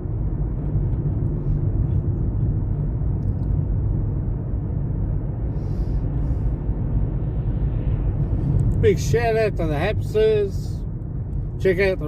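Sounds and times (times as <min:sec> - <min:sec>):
car road and engine rumble: 0:00.0 - 0:12.0.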